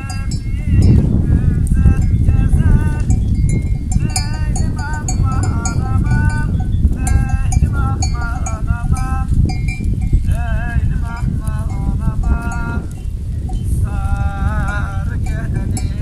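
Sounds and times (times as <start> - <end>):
livestock bells clinking: 0.0 - 16.0
rough low rumble: 0.0 - 16.0.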